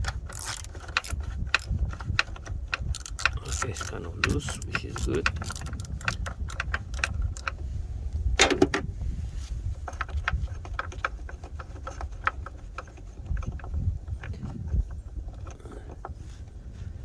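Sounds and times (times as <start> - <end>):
socket ratchet clicking: 0.0 - 7.6.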